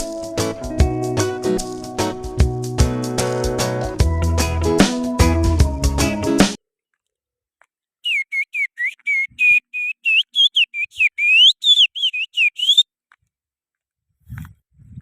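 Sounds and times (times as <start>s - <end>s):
finger whistle imitating birdsong: 8.0s - 12.9s.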